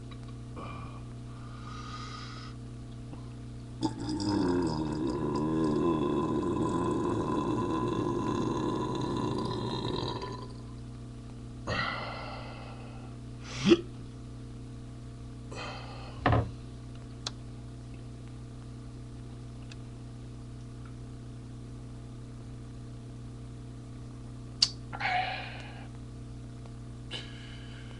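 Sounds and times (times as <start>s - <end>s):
man belching: 3.8s - 10.7s
throat noises: 13.5s - 13.9s.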